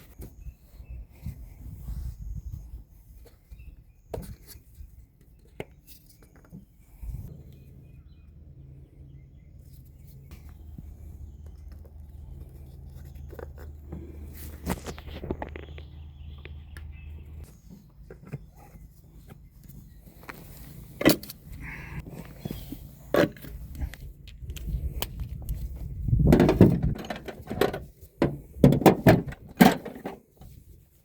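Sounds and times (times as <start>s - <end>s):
handling clicks and knocks: 23.1s - 30.5s.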